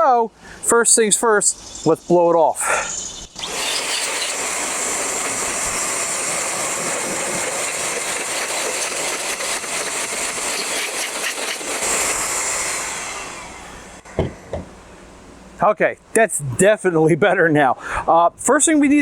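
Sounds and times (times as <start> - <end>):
blower rushing air: 2.4 - 15.6.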